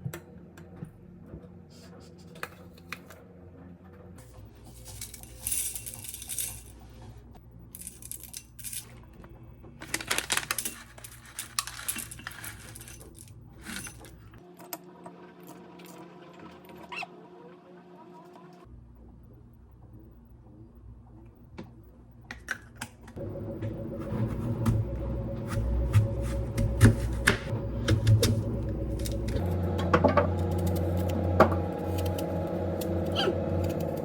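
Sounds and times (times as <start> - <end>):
steady low hum: 23.2 - 34.0.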